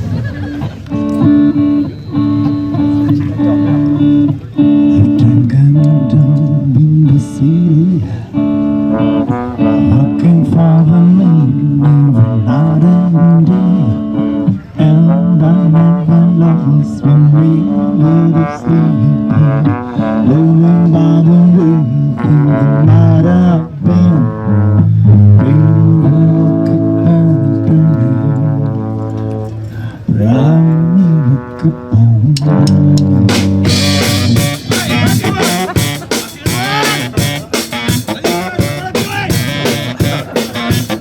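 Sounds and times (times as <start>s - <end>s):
rock band playing instrumental: 0.0s - 5.1s, 32.6s - 41.0s.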